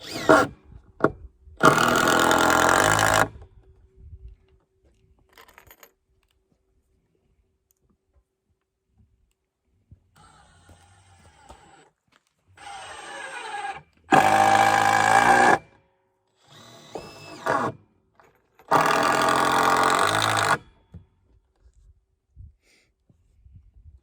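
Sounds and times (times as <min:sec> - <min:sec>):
power drill spinning: 0:00.0 - 0:00.5, 0:01.6 - 0:03.3, 0:10.2 - 0:11.9, 0:12.6 - 0:15.6, 0:16.4 - 0:17.8, 0:18.7 - 0:20.6.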